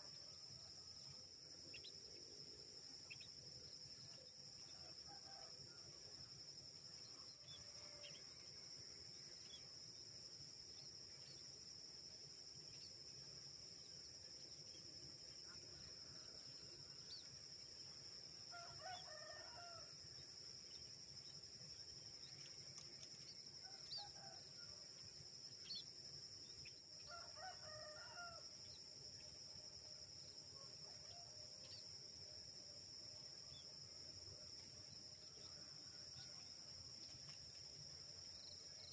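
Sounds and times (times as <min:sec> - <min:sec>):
rooster crowing faintly: 0:18.5 - 0:20.0.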